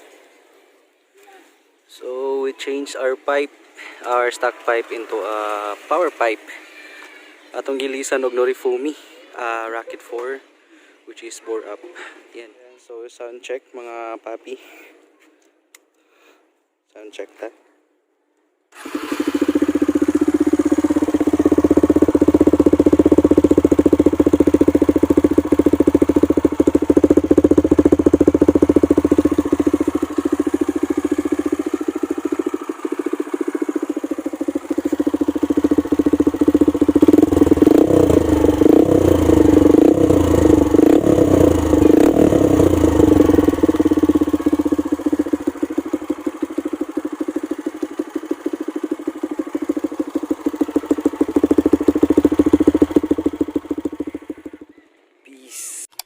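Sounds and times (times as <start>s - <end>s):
motorcycle engine idling and revving: 18.8s - 55.1s.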